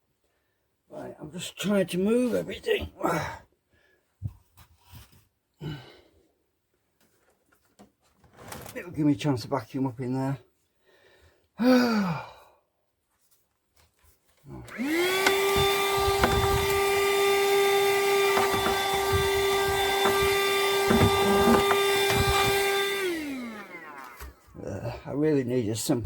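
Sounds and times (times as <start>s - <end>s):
vacuum cleaner motor whine: 14.7s - 24.5s
clicks and knocks: 17.9s - 22.7s.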